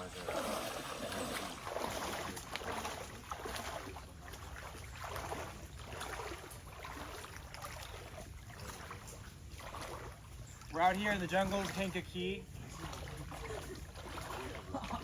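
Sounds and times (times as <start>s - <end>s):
footsteps wading through water: 0.0s - 15.0s.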